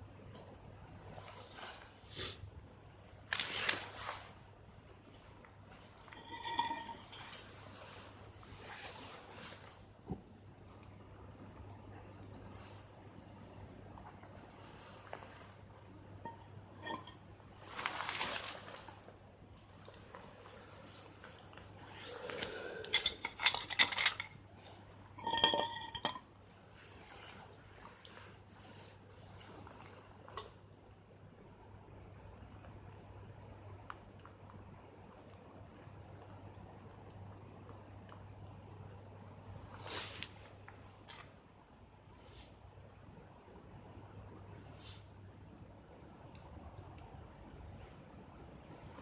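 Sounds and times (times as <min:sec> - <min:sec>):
metallic clink: 0:06.1 - 0:07.4, 0:16.3 - 0:17.2, 0:22.9 - 0:24.4, 0:25.2 - 0:26.2
metal cookware clattering: 0:06.1 - 0:07.5, 0:16.2 - 0:17.3, 0:22.9 - 0:24.5, 0:25.2 - 0:26.3.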